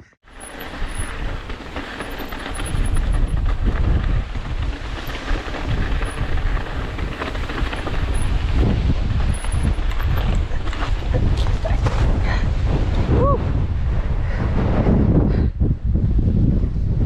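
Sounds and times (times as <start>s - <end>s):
gusting wind buffeting microphone: 0.2s - 17.0s.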